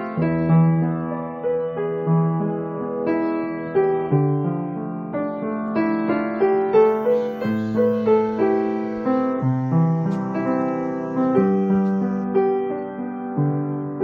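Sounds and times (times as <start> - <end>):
piano music: 6.8 - 12.4.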